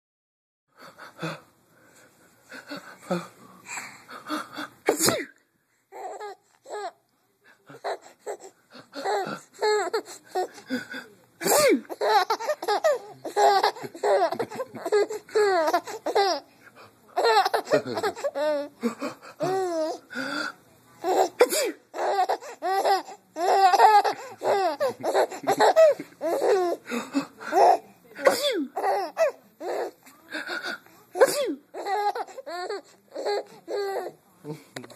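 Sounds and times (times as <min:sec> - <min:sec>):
breathy gasps: 0:00.7 - 0:04.8, 0:20.1 - 0:20.6, 0:26.8 - 0:27.6
loud sneeze: 0:04.8 - 0:05.4, 0:11.4 - 0:11.9, 0:21.4 - 0:21.9, 0:28.2 - 0:28.8, 0:31.2 - 0:31.6
baby laughing: 0:07.7 - 0:10.7, 0:11.8 - 0:16.5, 0:17.2 - 0:20.0, 0:21.0 - 0:26.8, 0:31.8 - 0:34.0.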